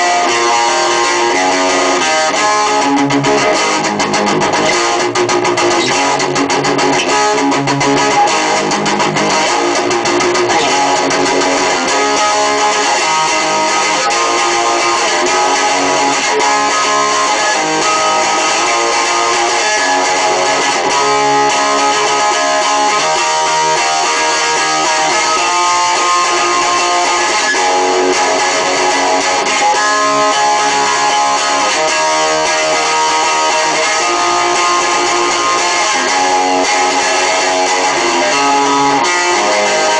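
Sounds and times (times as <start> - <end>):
guitar strumming chords: 0.0 - 39.9.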